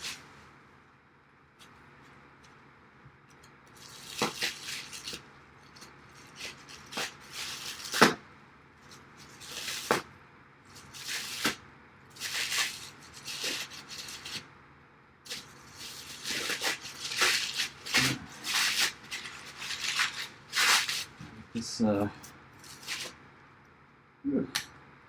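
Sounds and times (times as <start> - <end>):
plastic wrapping rustling and tearing: 0.0 - 0.4, 3.7 - 8.2, 8.8 - 10.1, 10.7 - 14.4, 15.3 - 21.2, 22.2 - 23.2.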